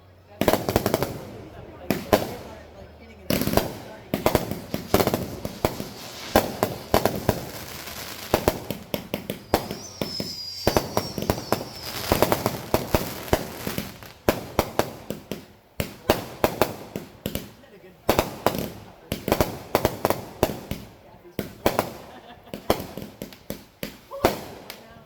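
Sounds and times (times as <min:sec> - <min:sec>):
fireworks bangs and crackles: 0:00.3 - 0:25.0
high firework whistle: 0:04.7 - 0:14.1.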